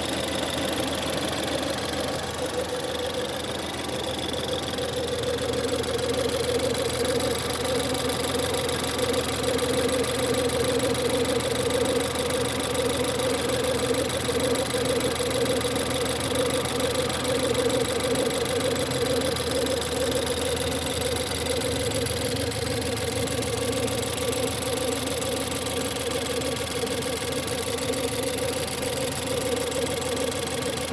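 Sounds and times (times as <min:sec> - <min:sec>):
car engine idling with whine: 0:00.0 - 0:30.9.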